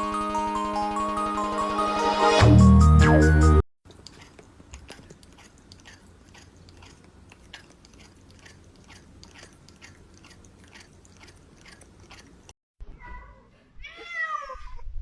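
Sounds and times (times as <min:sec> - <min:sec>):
pet chewing crunchy food: 0:03.8 - 0:12.6.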